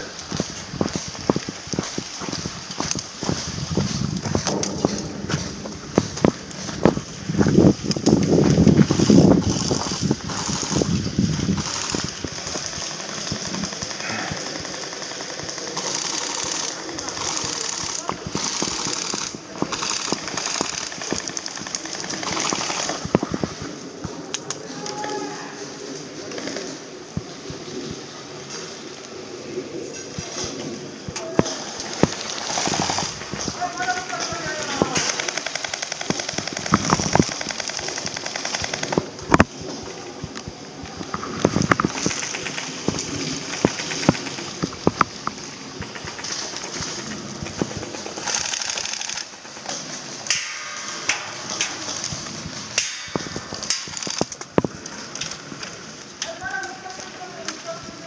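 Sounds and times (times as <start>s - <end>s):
airsoft guns firing bursts: 8.9s - 23.1s, 31.4s - 39.1s, 45.8s - 52.1s
loud sharp crack: 50.2s - 52.1s, 52.7s - 54.6s.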